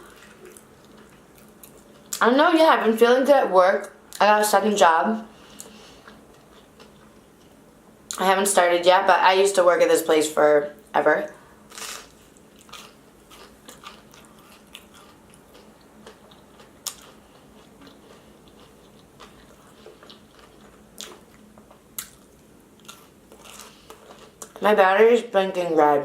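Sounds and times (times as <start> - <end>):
person chewing crunchy food: 0.0 - 2.2, 5.6 - 7.6, 11.7 - 24.6.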